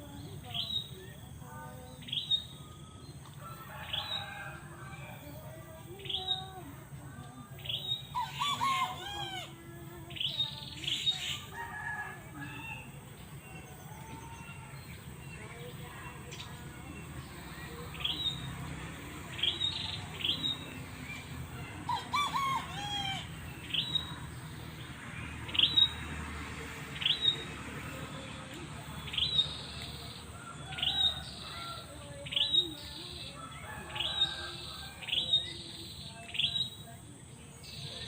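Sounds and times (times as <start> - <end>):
songbird sharp rising chirp: 19.3 - 38.0.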